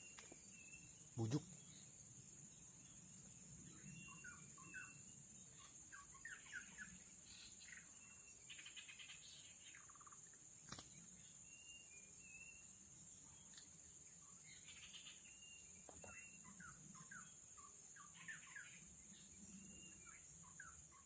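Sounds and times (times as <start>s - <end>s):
whistled bird notes: 14.8s - 17.4s.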